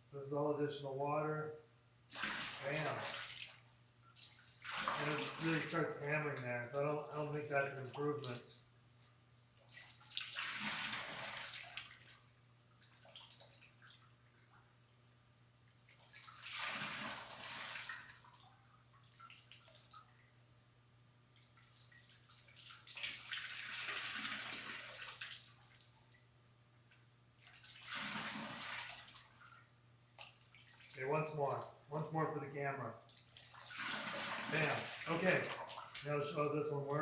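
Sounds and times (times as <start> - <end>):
water splashing down: 2.1 - 3.5, 4.6 - 5.8, 33.6 - 36.6
running water: 2.1 - 14.1, 27.4 - 37.0.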